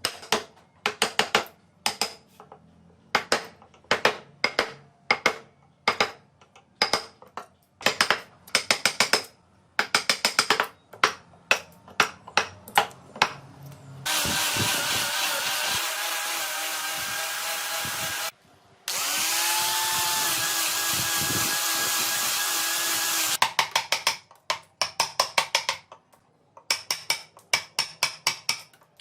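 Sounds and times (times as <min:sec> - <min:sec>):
power tool running: 0:14.1 - 0:18.3, 0:18.9 - 0:23.4
mallet knocking on chisel: 0:26.7 - 0:28.7.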